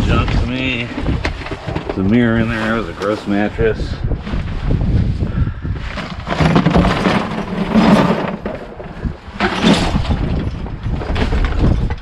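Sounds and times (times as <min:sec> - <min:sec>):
junk clattering in a dumpster: 0:05.9 - 0:12.0.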